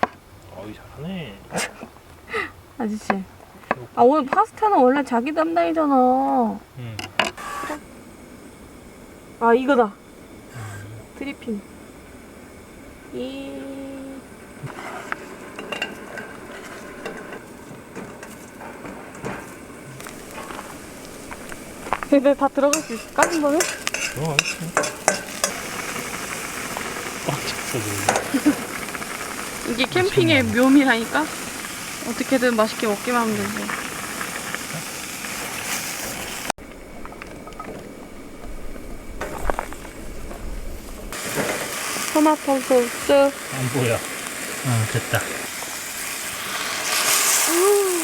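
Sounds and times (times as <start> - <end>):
food hissing in a pot: 7.4 - 36.6, 38.5 - 48.0
cooking utensils clicking: 20.0 - 31.5
metal cookware clinking: 22.0 - 26.1, 28.0 - 28.7.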